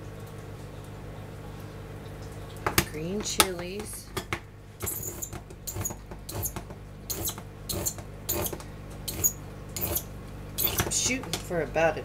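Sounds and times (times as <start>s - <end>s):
squeaky metal scraping tin can: 4.8s - 11.0s.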